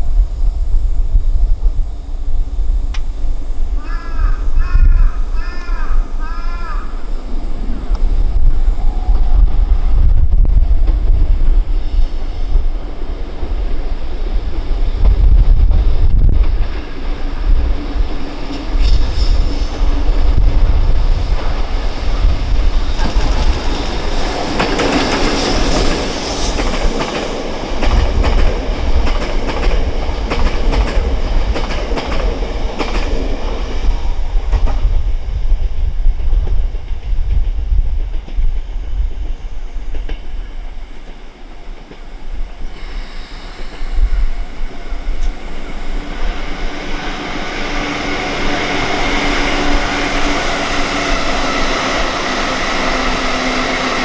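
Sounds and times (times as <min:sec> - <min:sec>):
train wheels clattering: 0:10.8 - 0:35.0.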